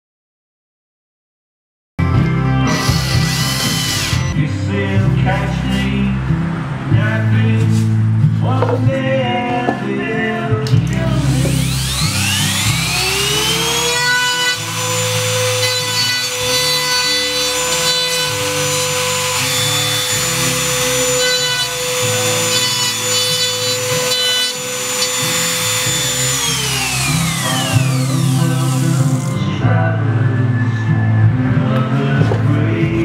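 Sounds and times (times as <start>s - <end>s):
sawing wood: 2.7s - 4.3s, 11.4s - 29.4s
power tool motor whine: 2.7s - 4.4s, 11.2s - 29.6s.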